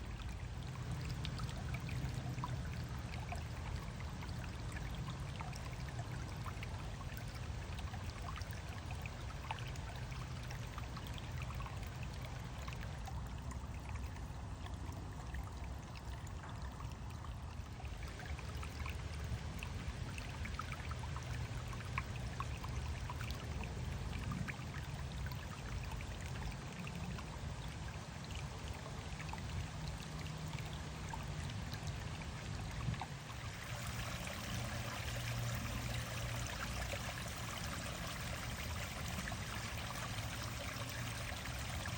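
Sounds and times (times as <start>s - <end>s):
stream flowing over rocks: 14.4s - 41.9s.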